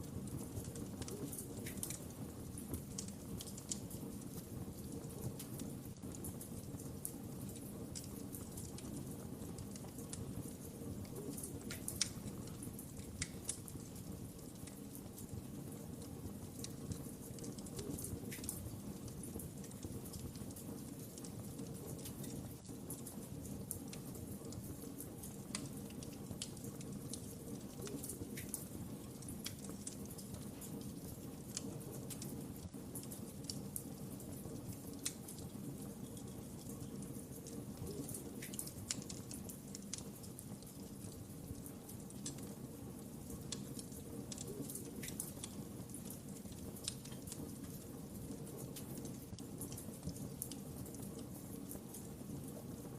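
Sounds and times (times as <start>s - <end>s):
wood fire crackling: 0.0s - 52.9s.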